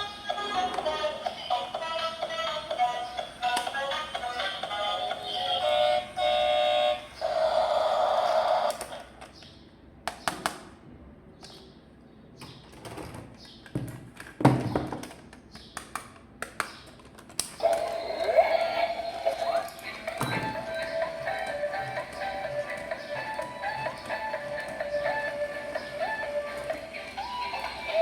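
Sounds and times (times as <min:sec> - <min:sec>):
electronic toy tune: 0:04.7 - 0:08.8, 0:17.6 - 0:28.0.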